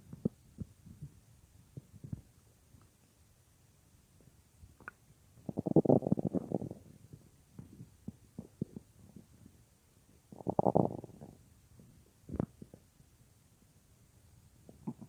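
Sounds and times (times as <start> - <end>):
stomach growling and gurgling: 0.0 - 1.2, 1.8 - 2.3, 4.8 - 9.6, 10.2 - 12.8, 14.6 - 15.0.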